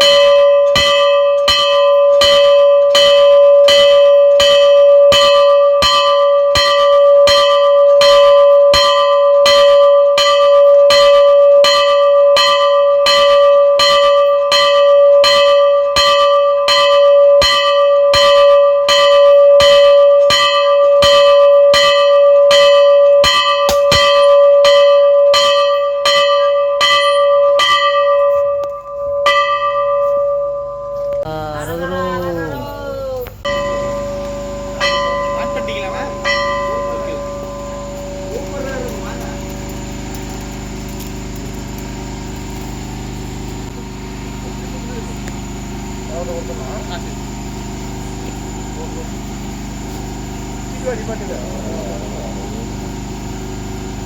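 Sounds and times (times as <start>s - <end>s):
temple bell ringing: 0.0s - 54.0s.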